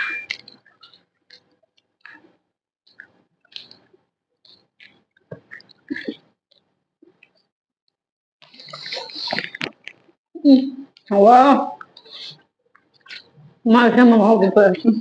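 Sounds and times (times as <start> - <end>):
person chewing food: 0.1 - 7.4, 11.8 - 13.5.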